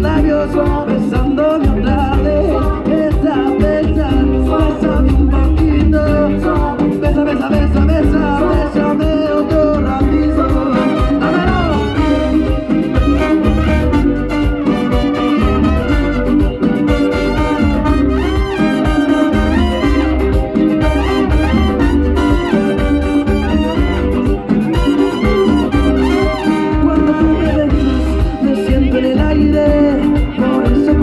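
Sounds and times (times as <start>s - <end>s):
live latin band playing: 0.0s - 31.0s
trumpets: 10.7s - 27.7s.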